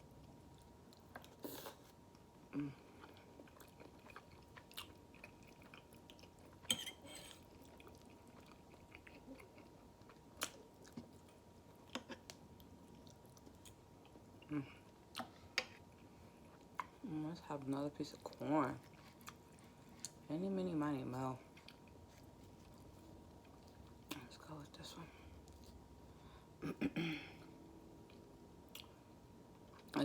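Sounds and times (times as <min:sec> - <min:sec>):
person chewing food: 0:00.2 - 0:17.0, 0:18.2 - 0:20.2, 0:21.5 - 0:24.2, 0:25.4 - 0:26.0.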